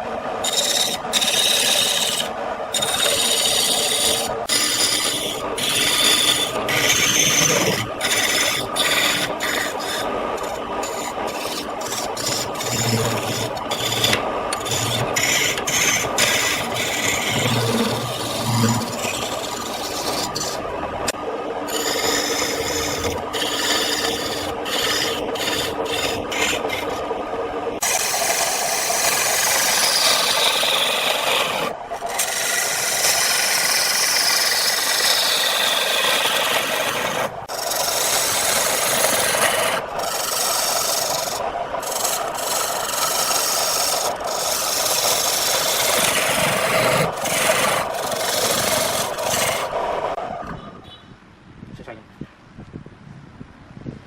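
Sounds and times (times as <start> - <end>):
tool scraping wood on a lathe: 0.0 - 50.3.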